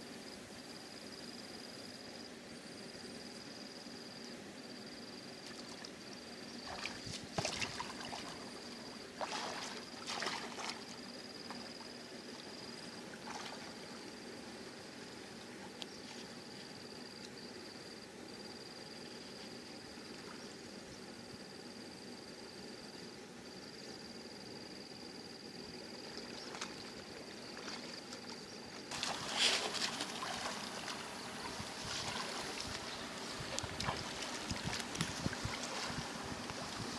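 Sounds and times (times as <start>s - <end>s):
water splashing and sloshing: 6.6s - 14.2s, 26.1s - 36.9s.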